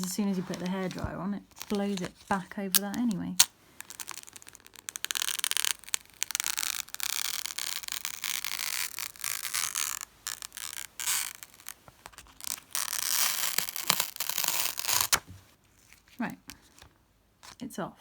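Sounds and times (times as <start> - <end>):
fingers scraping paper sheet: 3.8 - 16.0.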